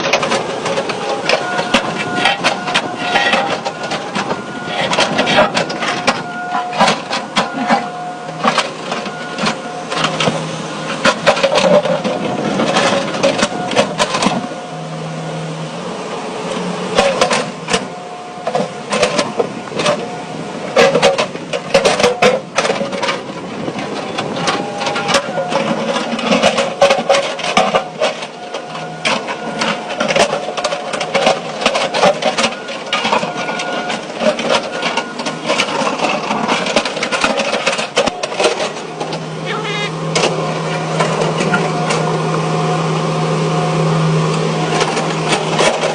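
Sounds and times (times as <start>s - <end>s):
excavator mechanical whine: 0.0s - 45.9s
stone and steel clattering: 24.2s - 42.1s.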